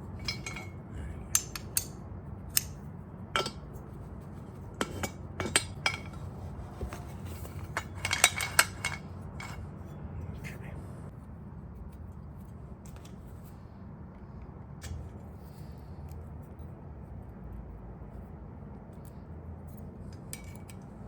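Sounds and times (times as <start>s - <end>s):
metal tools clinking: 0.0s - 2.0s, 3.4s - 3.6s, 4.8s - 6.3s, 7.4s - 9.6s
steady low hum: 0.0s - 21.0s.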